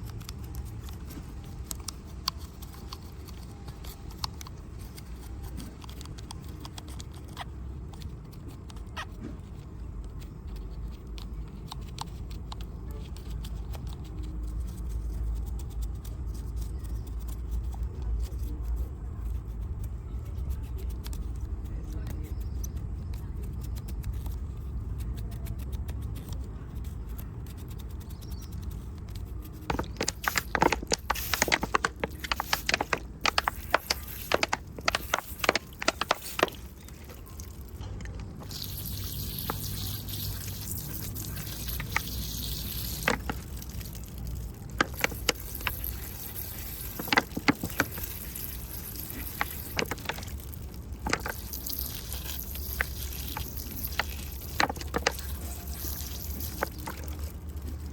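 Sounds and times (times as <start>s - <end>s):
tools tapping small model: 29.7s - 37.4s.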